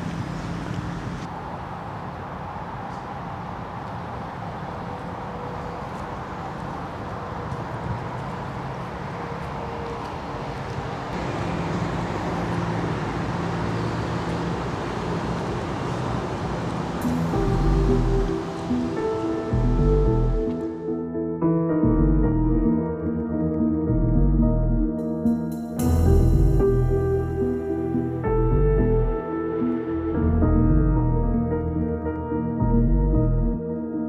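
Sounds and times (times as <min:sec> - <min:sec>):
vehicle engine approaching: 0:00.0 - 0:20.5
road traffic noise: 0:00.0 - 0:20.8.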